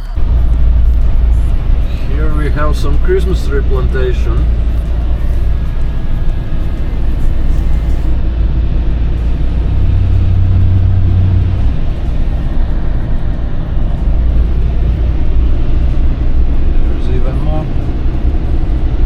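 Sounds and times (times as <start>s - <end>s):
vehicle engine running: 0.0s - 19.0s.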